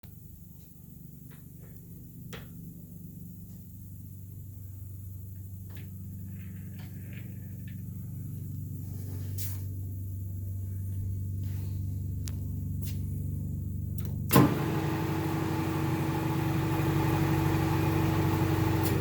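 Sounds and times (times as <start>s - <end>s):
lathe humming: 14.4s - 19.0s.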